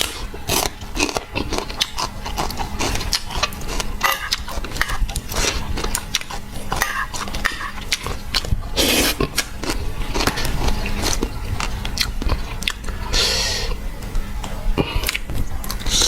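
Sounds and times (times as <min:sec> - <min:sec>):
person chewing crunchy food: 0:00.0 - 0:16.0.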